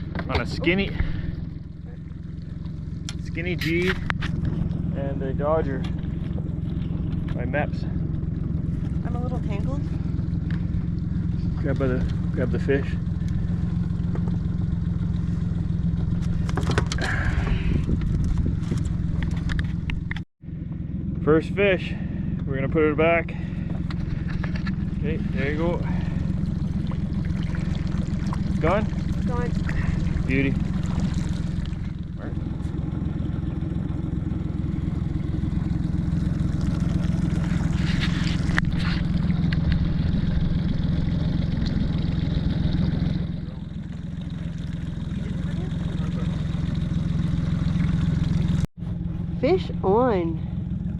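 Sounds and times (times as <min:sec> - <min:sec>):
boat motor running: 0:00.0 - 0:50.9
brief scraping noise: 0:37.7 - 0:39.1.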